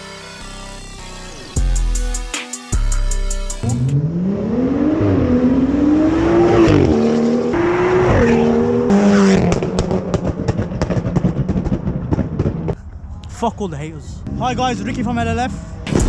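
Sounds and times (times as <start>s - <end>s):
car engine revving hard: 3.6s - 11.2s
exhaust pops and crackles: 9.4s - 12.8s.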